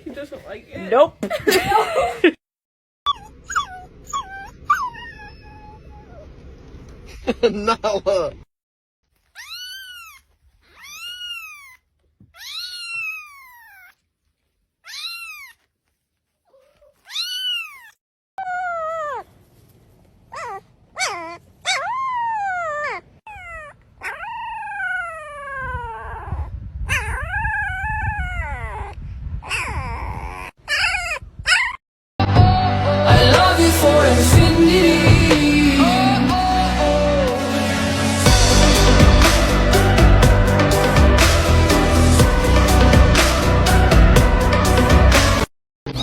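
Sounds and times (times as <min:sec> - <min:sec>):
cat meowing: 0:09.4 - 0:13.9, 0:14.9 - 0:15.6, 0:16.9 - 0:19.2
low rumble: 0:32.2 - 0:45.5.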